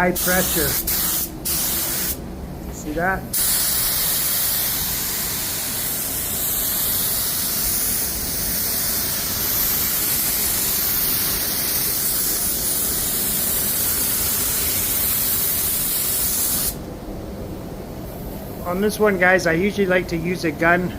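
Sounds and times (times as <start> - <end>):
spray gun hissing: 0.0 - 2.2, 3.3 - 16.8.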